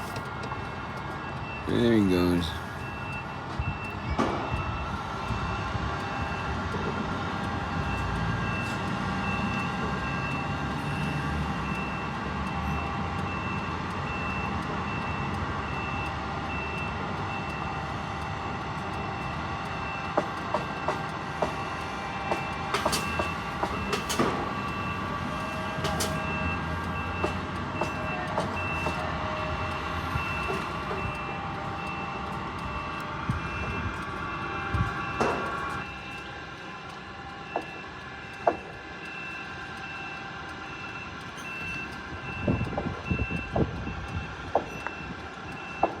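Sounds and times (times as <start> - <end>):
heavy engine running: 0.0 - 46.0
vehicle backup alarm beeping: 0.0 - 46.0.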